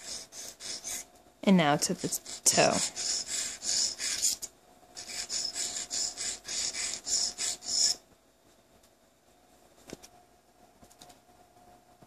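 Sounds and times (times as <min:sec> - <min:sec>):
sharpening stone scraping steel: 0:02.1 - 0:08.0.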